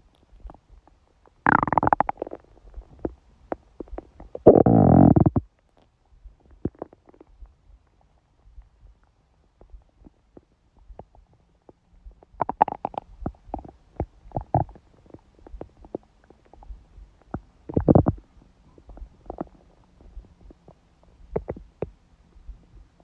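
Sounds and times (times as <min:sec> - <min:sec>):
stomach growling: 0:01.3 - 0:07.6, 0:09.6 - 0:21.9.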